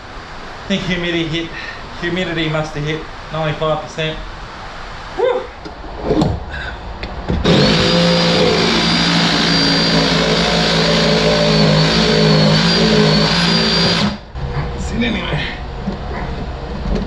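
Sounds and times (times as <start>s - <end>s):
electric sander whining: 7.4s - 14.2s.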